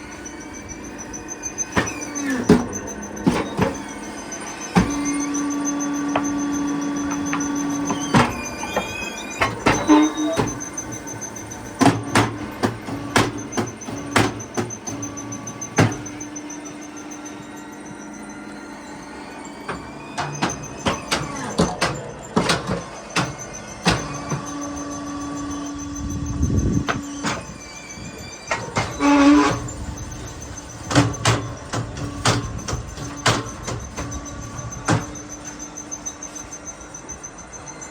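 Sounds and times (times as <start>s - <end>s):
motor hum: 0.0s - 37.9s
machine clanking sharply: 0.5s - 14.5s.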